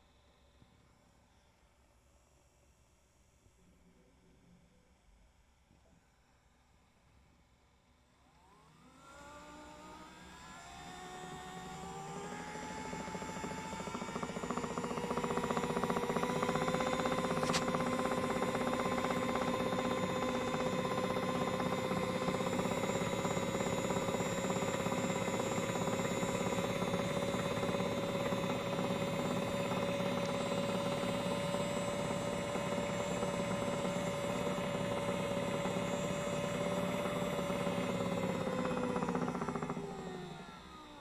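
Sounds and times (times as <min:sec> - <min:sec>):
small electric motor whining: 0:08.3 - 0:41.0.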